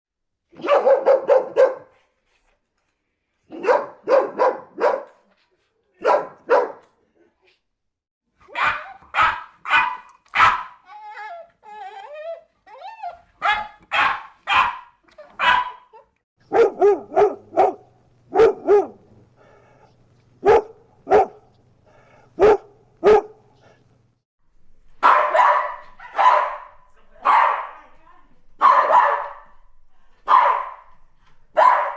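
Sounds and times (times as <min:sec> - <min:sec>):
dog barking: 0:00.5 - 0:02.0, 0:03.5 - 0:05.2, 0:06.0 - 0:06.9, 0:08.5 - 0:10.8, 0:13.4 - 0:19.0, 0:20.4 - 0:21.5, 0:22.4 - 0:23.4, 0:25.0 - 0:27.8, 0:28.6 - 0:29.5, 0:30.2 - 0:30.9, 0:31.5 - 0:31.9
dog whining: 0:10.4 - 0:13.8.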